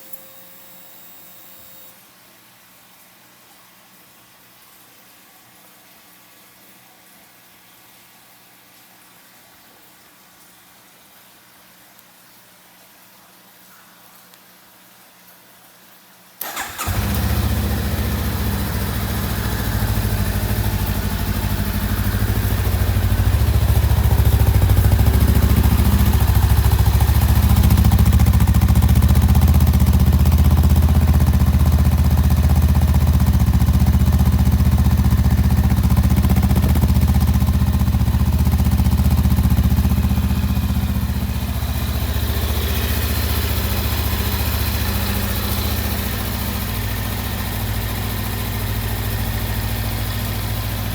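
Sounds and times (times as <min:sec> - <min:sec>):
motorcycle engine idling: 0:16.5 - 0:50.9.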